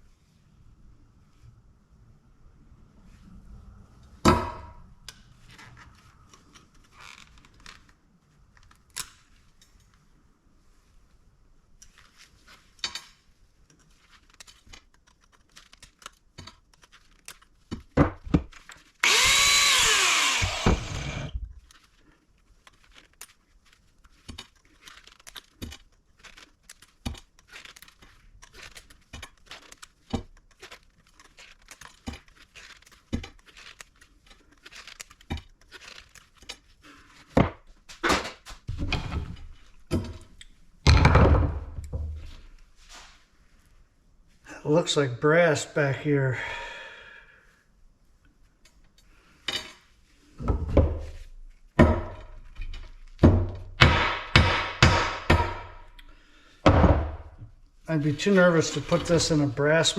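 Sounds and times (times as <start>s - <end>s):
handheld power tool running: 19.0s - 21.5s.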